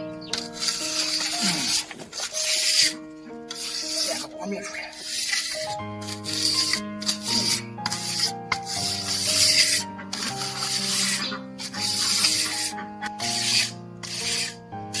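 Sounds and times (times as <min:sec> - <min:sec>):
background music of held notes: 0:00.0 - 0:15.0
trowel scraping wet cement: 0:00.3 - 0:15.0.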